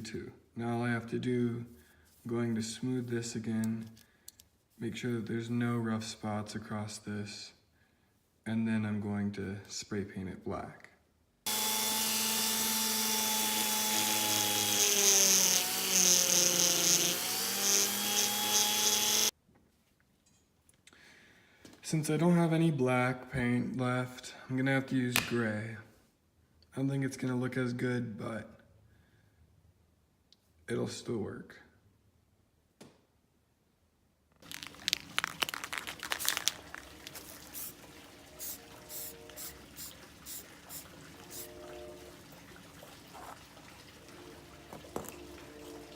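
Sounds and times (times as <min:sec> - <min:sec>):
high-speed power tool running: 0:11.5 - 0:19.3
spray can rattling: 0:34.4 - 0:37.8, 0:38.4 - 0:41.5
grinding hiss on metal: 0:38.4 - 0:41.6.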